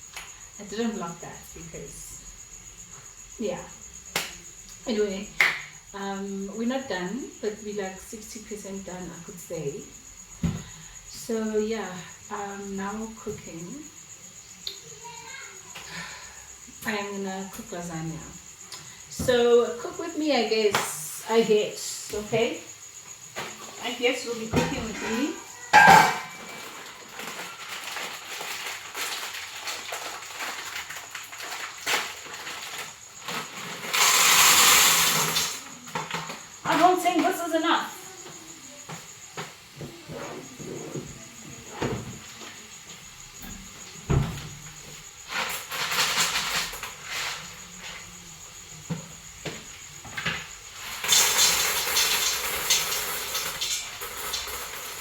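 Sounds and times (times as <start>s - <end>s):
loud steady hissing rush: 26.2s - 55.0s.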